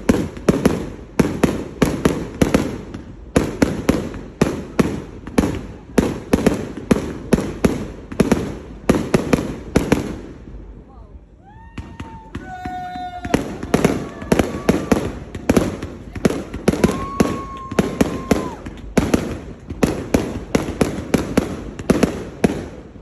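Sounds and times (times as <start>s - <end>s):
fireworks bangs: 0.0s - 10.8s, 11.6s - 23.0s
fireworks whistling: 11.7s - 23.0s.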